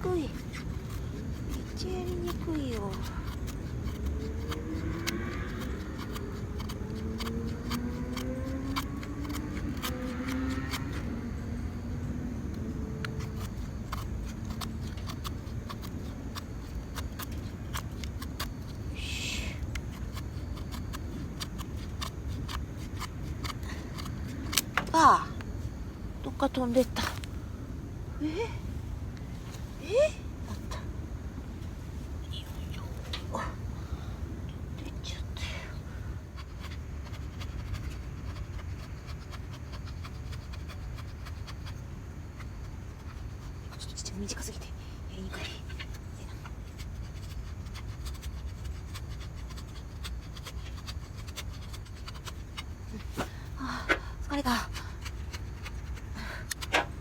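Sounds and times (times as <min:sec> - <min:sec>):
steady low rumble: 0:00.0 - 0:40.1
knife clicking on wood: 0:00.4 - 0:11.0, 0:12.5 - 0:18.9, 0:19.6 - 0:25.5.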